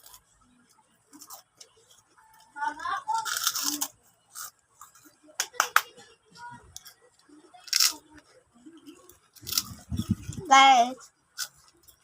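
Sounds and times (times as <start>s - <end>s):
crunchy snack being chewed: 3.2s - 5.2s, 6.8s - 10.4s.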